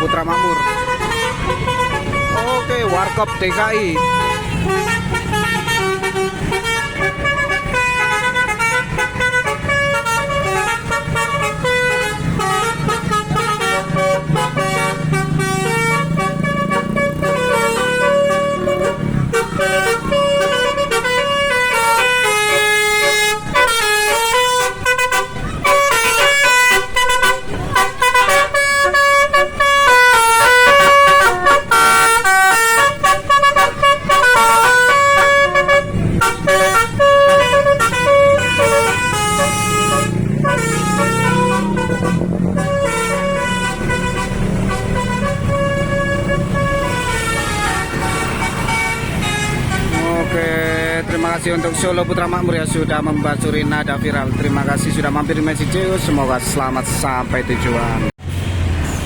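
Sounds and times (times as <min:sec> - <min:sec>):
bus musical horn playing a tune: 0:00.0 - 0:58.1
bus engine rumbling: 0:00.0 - 0:59.0.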